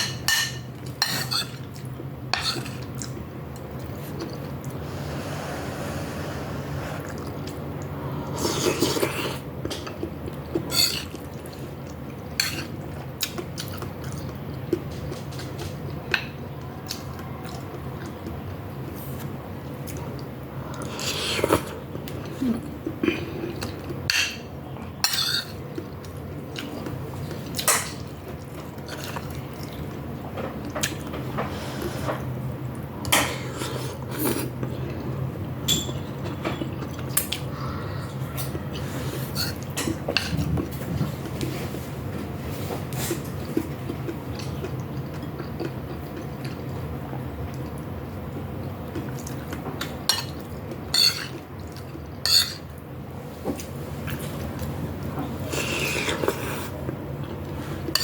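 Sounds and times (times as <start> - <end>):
low hum: 4.5 - 8.4.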